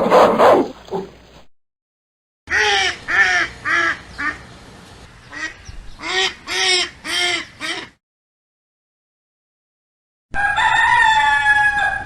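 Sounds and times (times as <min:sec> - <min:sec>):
duck quacking: 0:02.5 - 0:04.4, 0:05.3 - 0:08.0.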